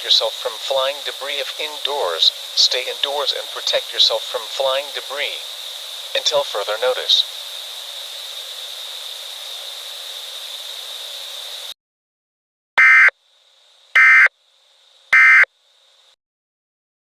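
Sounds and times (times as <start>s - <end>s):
faint high whine: 12.8s - 13.1s, 14.0s - 16.1s
harsh digital data bursts: 12.8s - 13.1s, 14.0s - 14.3s, 15.2s - 15.5s.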